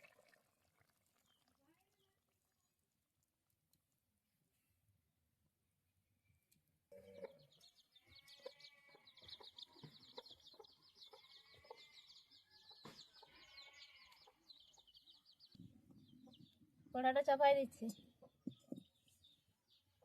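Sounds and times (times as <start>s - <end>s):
chickens clucking and chirping: 7.2s - 16.8s.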